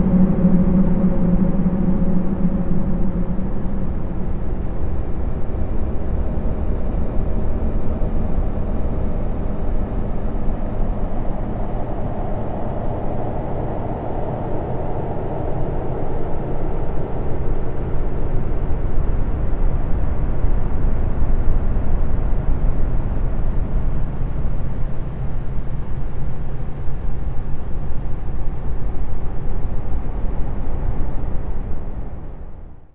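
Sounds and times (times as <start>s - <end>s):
low rumbling hissing drone: 0.0s - 32.8s.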